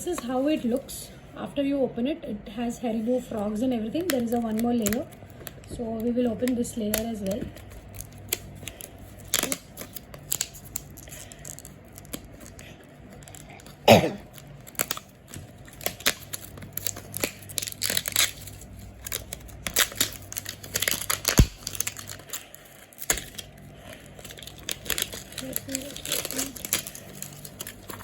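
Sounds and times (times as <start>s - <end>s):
packaging rustling and crackling: 3.3s - 28.0s
packaging ripping: 6.9s - 28.0s.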